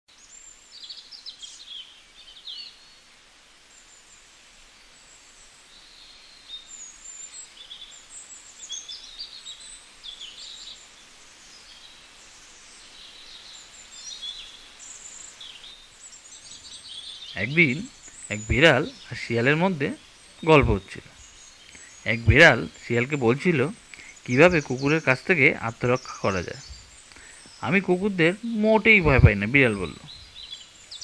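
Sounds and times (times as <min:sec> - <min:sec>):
faint hiss: 0:00.1 - 0:31.0
birds chirping and whistling: 0:13.2 - 0:31.0.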